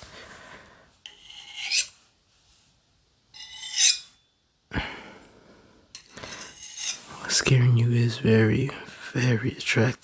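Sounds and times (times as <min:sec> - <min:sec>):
knife scraping on sharpener: 0:01.1 - 0:02.0, 0:03.4 - 0:04.2, 0:06.0 - 0:07.0.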